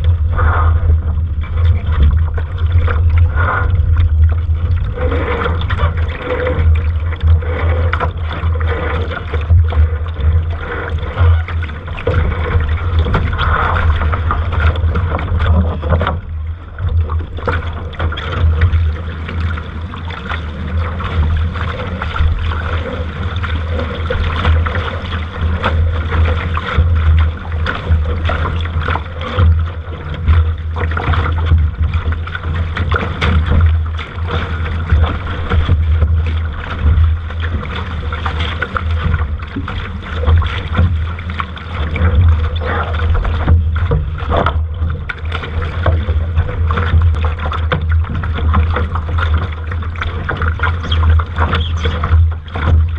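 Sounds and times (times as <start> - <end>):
short splashes: 0.0 - 52.9
water slapping against hull: 0.0 - 52.9.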